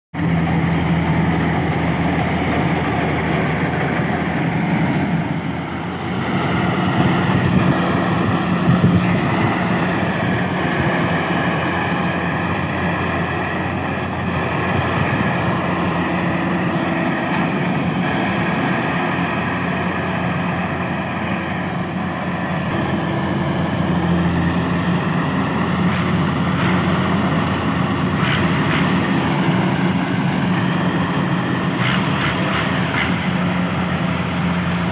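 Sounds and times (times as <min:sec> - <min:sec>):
combine harvester diesel engine: 0:00.1 - 0:34.9
wavering machine whine: 0:00.2 - 0:34.9.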